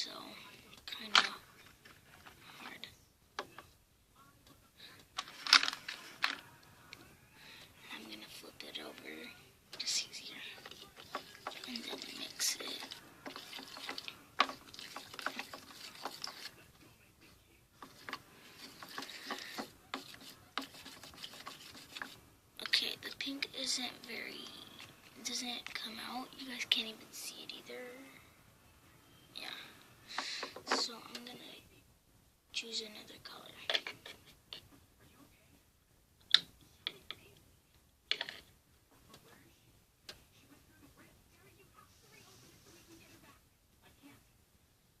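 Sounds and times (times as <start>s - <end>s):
utensil clicking and tapping: 9.7s - 16.6s, 17.8s - 23.4s
small objects clicking and tapping: 10.6s - 16.6s, 38.1s - 38.5s.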